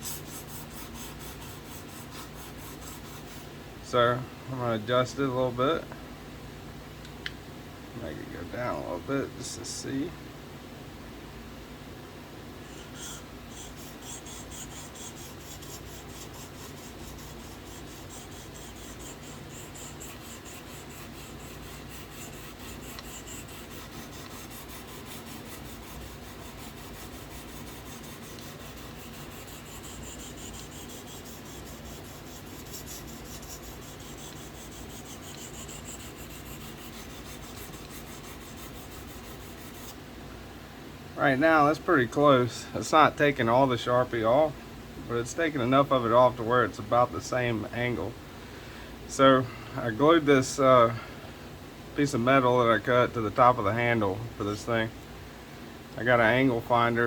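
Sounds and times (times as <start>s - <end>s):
sharpening stone rubbing knife: 12.7s - 40.0s.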